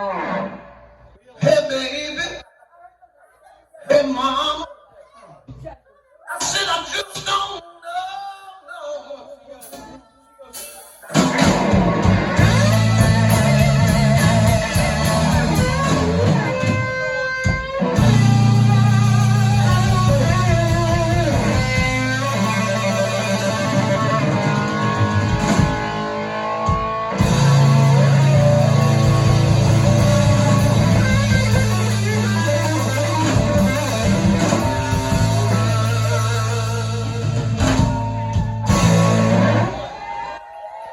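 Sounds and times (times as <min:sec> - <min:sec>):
electric guitar leads: 0:00.0 - 0:01.2, 0:11.1 - 0:40.2
blues rock band playing: 0:10.6 - 0:40.2.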